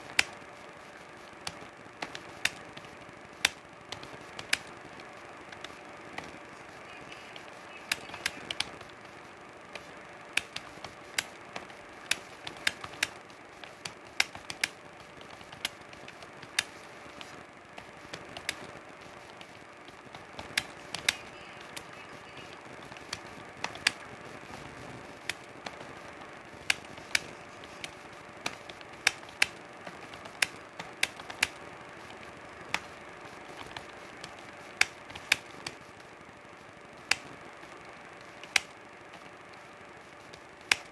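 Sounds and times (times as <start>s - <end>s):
faint steady hum: 0.0s - 40.9s
keyboard keys clicking: 1.3s - 6.4s, 7.0s - 35.8s.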